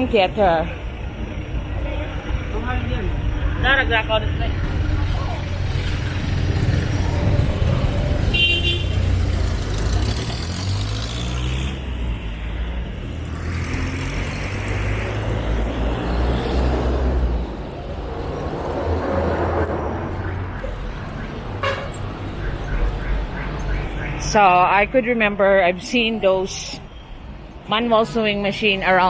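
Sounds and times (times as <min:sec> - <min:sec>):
vehicle engines rumbling: 0:00.0 - 0:29.0
high-pitched horn toot: 0:21.6 - 0:22.1.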